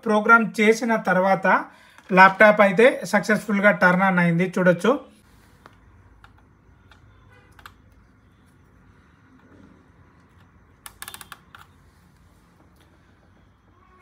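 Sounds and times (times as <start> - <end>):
laptop keyboard keys clicking: 5.7 - 8.0, 10.2 - 11.9.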